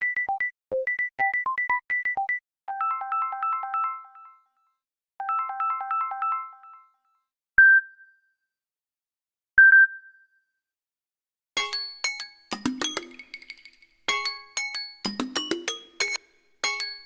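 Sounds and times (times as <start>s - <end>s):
bell-like synthesized ringtone: 0.2s - 7.2s
tinkling ringtone: 11.6s - 17.0s.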